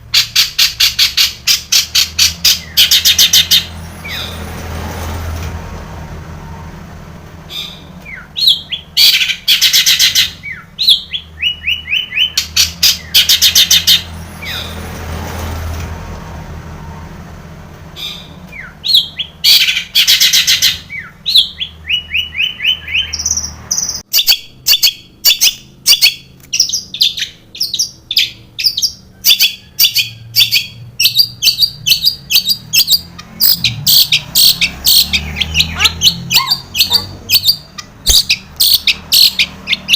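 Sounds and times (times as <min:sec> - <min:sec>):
shrike singing: 0:07.4 - 0:14.8, 0:17.9 - 0:39.9.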